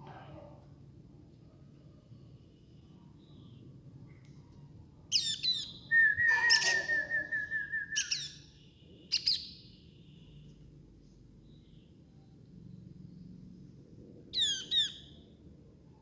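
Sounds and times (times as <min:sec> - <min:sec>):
baby birds chirping: 0:05.1 - 0:08.3.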